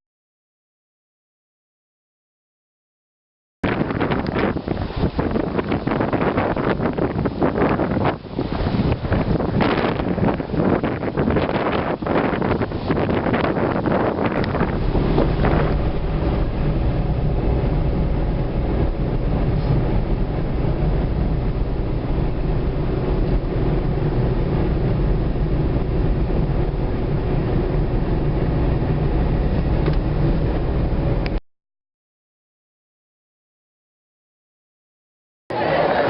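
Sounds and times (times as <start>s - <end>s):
wind buffeting microphone: 3.6s - 31.4s
engine drone: 8.2s - 31.4s.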